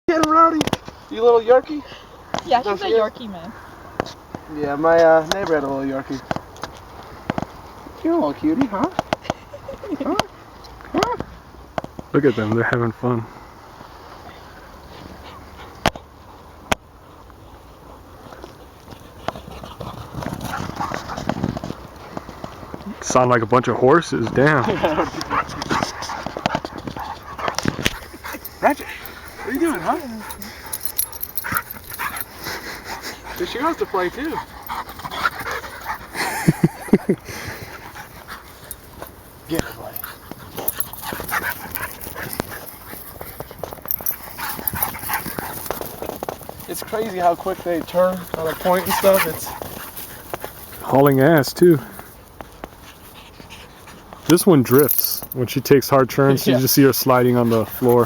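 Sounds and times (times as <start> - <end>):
dogs galloping: 17.8 - 58.0
dogs whining and yipping: 24.7 - 37.0, 39.9 - 46.0.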